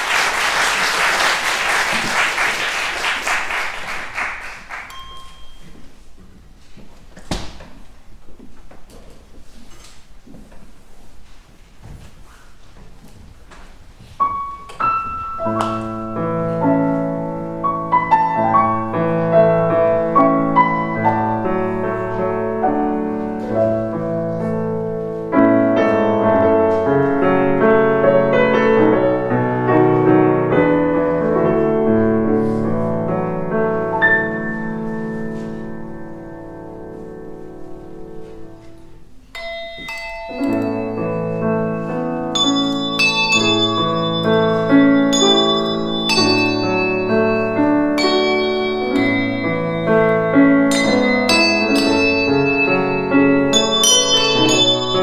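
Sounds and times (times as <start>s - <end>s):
handbells ringing: 4.8s - 5.8s, 39.4s - 55.0s
piano chords: 14.2s - 55.0s.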